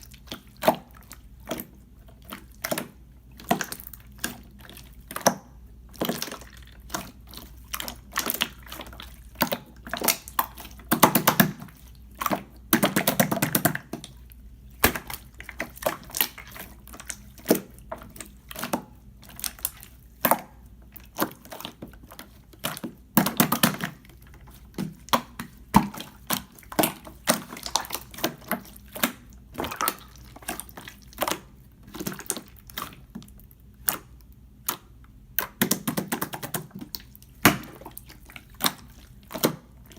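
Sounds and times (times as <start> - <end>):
slime squishing: 0.0 - 39.9
slime clicking and popping: 33.8 - 39.7.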